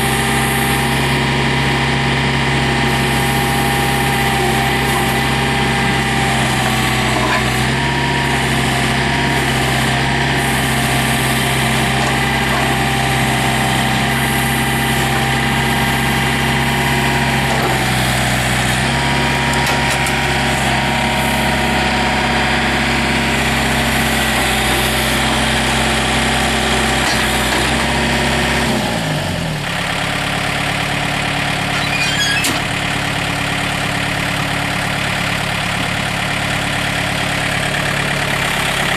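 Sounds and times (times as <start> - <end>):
diesel engine running: 0.0 - 38.9.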